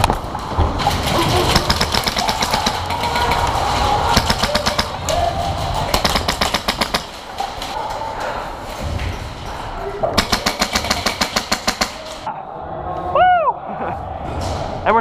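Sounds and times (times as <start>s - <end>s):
airsoft guns firing bursts: 1.4s - 5.0s, 5.8s - 7.2s, 10.2s - 12.1s.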